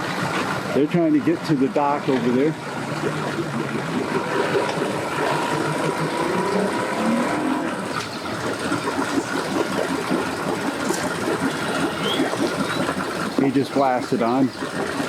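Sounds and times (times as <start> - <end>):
outboard boat motors running: 0.0 - 15.0.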